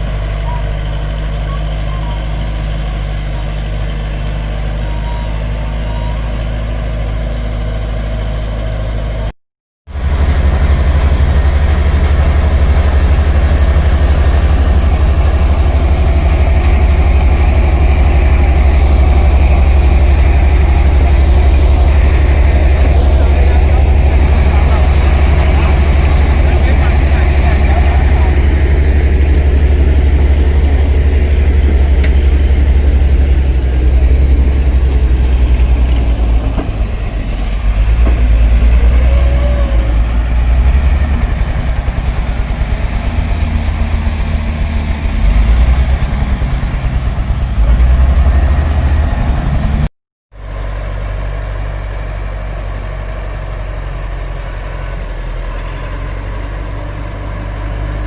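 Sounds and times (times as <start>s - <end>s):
heavy machine diesel engine droning: 0.0s - 9.3s, 9.9s - 58.0s.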